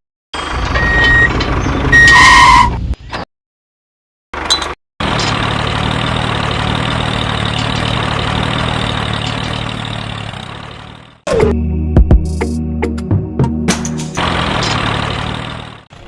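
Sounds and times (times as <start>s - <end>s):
engine idling: 4.4s - 11.2s, 14.2s - 16.0s.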